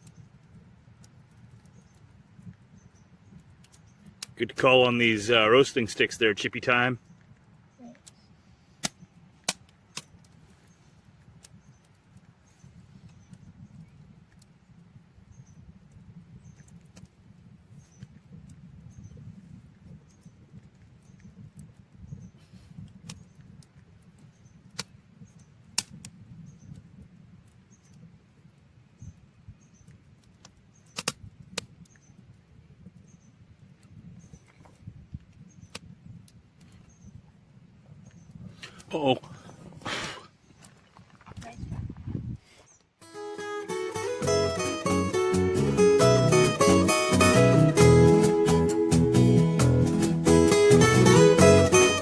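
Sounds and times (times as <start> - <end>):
campfire crackling: 0.0 - 18.9, 22.8 - 33.0, 43.0 - 52.0.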